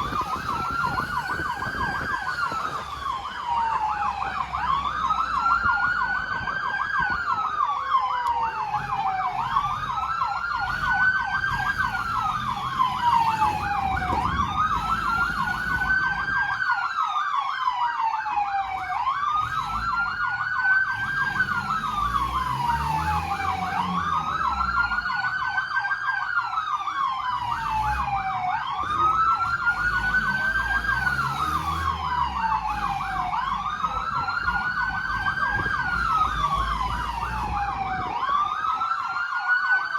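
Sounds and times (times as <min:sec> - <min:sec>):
vehicle engine rumbling: 0:00.0 - 0:16.8, 0:18.6 - 0:39.2
rapidly warbling siren: 0:00.0 - 0:39.9
siren wailing: 0:00.0 - 0:39.9.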